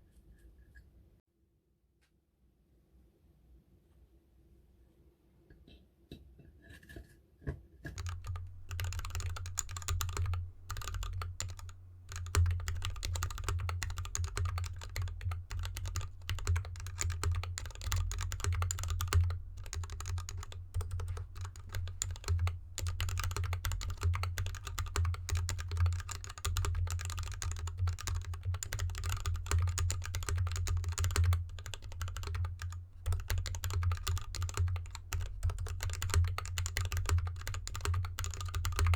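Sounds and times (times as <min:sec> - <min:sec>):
typing on mechanical keyboard: 0:08.0 - 0:38.9.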